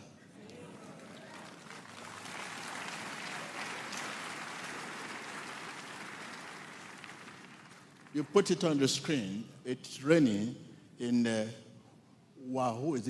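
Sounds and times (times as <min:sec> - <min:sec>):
congregation applauding: 0:00.6 - 0:08.9.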